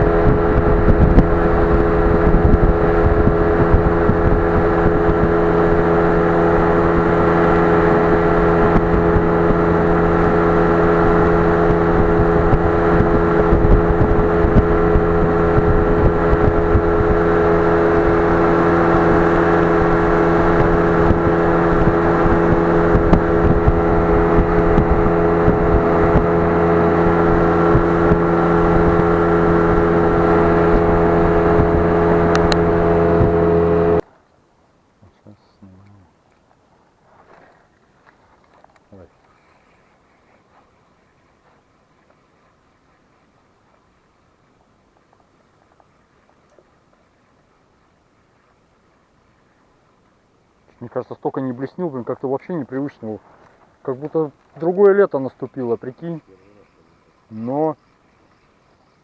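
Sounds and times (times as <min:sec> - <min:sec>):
motor droning: 0:00.0 - 0:34.0.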